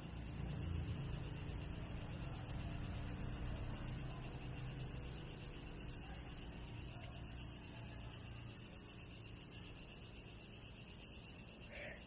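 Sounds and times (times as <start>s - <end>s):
high-pitched hiss: 2.9s - 12.0s.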